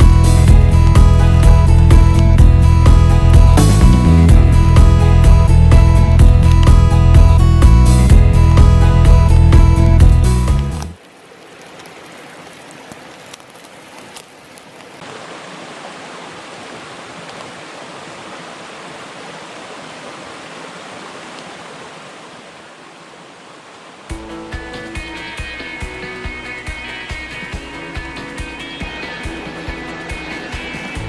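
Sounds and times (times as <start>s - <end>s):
running water rushing: 0.0s - 31.0s.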